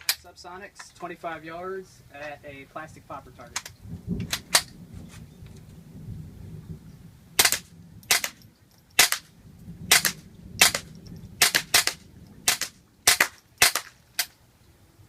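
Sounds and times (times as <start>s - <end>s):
suppressed rifle cracks: 7.4s - 9.3s, 9.9s - 14.4s.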